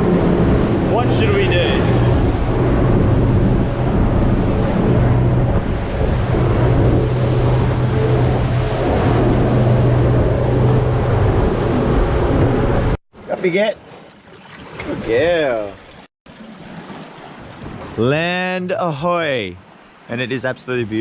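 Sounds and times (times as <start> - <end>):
motorboat engine droning: 0.0 - 13.0
wind and water rushing: 0.0 - 21.0.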